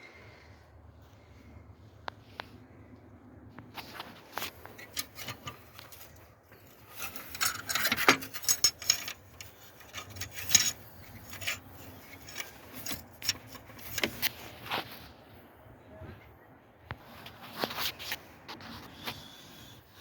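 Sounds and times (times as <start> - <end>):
hand tools clinking and scraping: 3.8 - 14.8.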